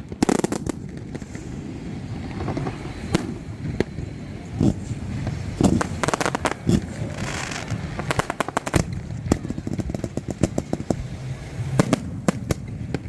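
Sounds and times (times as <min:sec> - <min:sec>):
fireworks bangs and crackles: 0:00.0 - 0:13.0
low rumble: 0:00.0 - 0:13.0.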